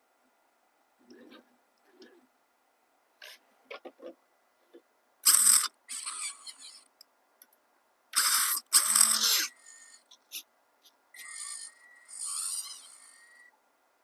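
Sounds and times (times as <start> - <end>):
rc car motor whirring: 5.2 - 6.9, 8.2 - 10.2, 11.2 - 13.5.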